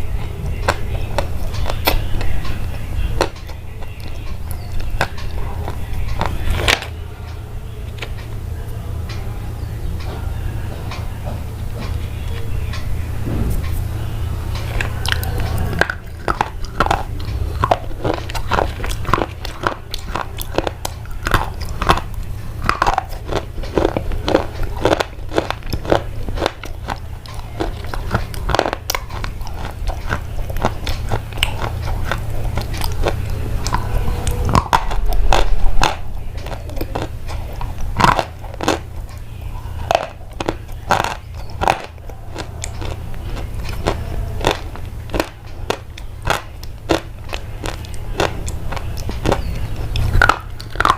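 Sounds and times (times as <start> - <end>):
constant low hum: 0.0 - 50.9
crunching and chewing: 0.0 - 50.9
low thump: 13.2 - 13.8.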